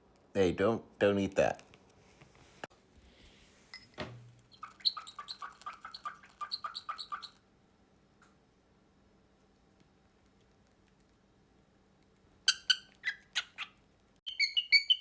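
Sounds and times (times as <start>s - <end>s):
cockatiel chirping: 4.5s - 7.4s, 12.5s - 15.0s.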